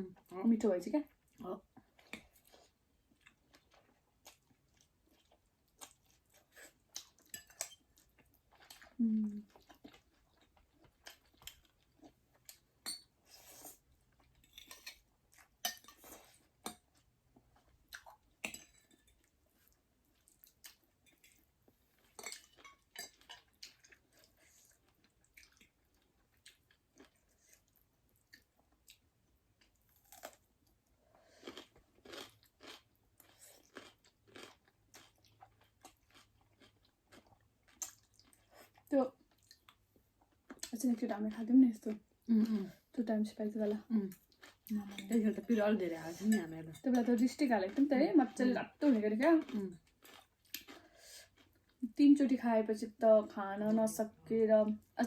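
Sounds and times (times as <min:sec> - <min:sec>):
person chewing: 0:01.3 - 0:40.7, 0:44.0 - 0:45.2, 0:48.8 - 0:51.8.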